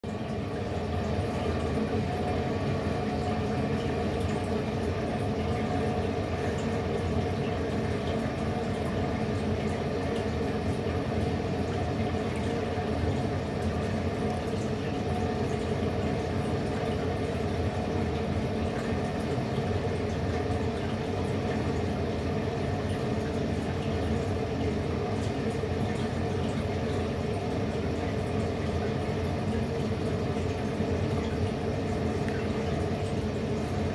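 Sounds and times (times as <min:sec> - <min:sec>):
steady hum with watery hiss: 0:00.0 - 0:33.9.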